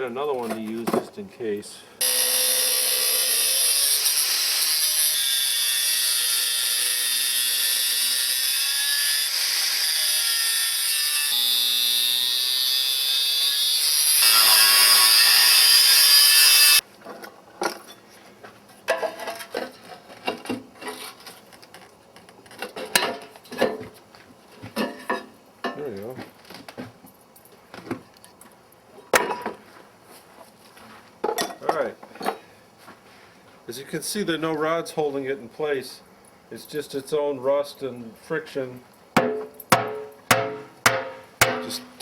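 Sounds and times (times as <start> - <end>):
power tool cutting metal: 2.0 - 16.8.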